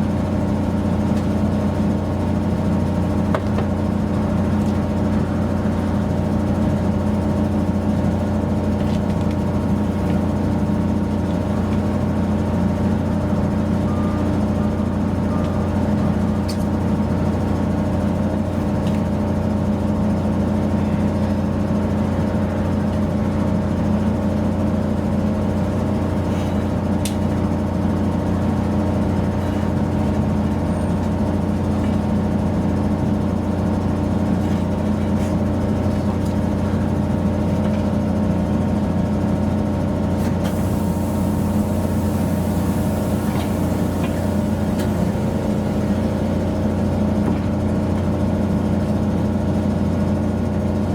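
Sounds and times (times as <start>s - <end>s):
motor humming: 40.5s - 47.3s.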